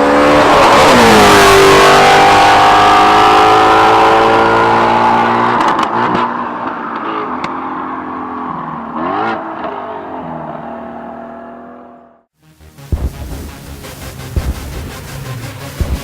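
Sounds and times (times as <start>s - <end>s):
car engine revving: 0.0s - 6.1s, 9.0s - 16.0s
exhaust cracks: 12.8s - 16.0s.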